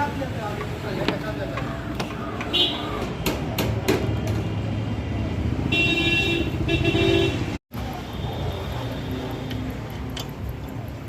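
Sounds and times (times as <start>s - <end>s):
vehicle horn: 5.7s - 7.6s.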